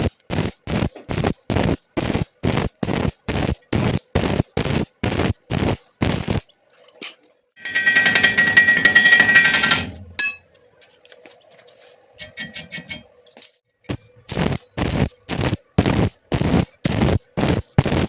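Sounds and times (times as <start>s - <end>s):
welding arc crackling: 0.0s - 6.4s, 14.3s - 18.0s
metallic ring: 7.6s - 10.5s.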